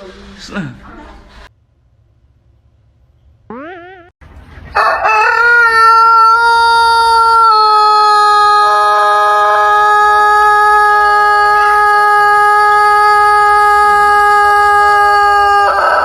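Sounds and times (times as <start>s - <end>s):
rooster crowing: 4.7s - 16.0s.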